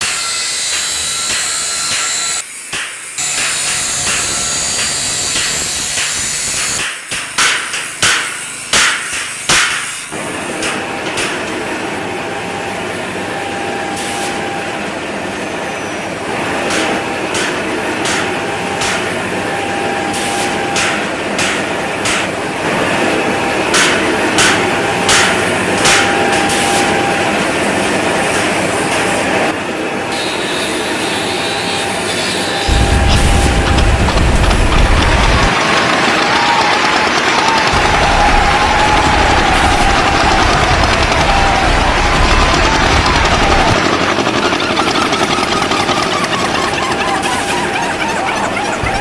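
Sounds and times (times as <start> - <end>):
hammer strikes: 0.0 - 11.5, 16.6 - 19.2, 20.4 - 22.4, 23.6 - 27.0
machinery running: 0.0 - 49.0.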